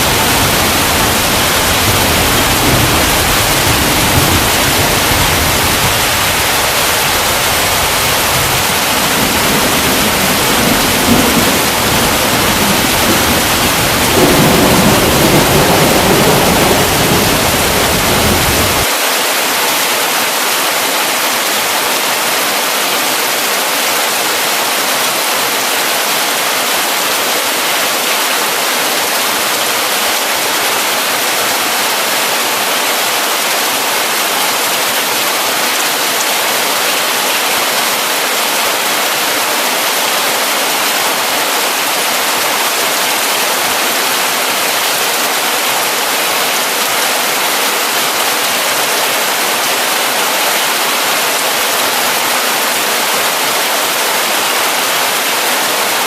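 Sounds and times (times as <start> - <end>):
thunder rumbling: 0.0 - 18.9
heavy rain hissing: 0.0 - 56.0.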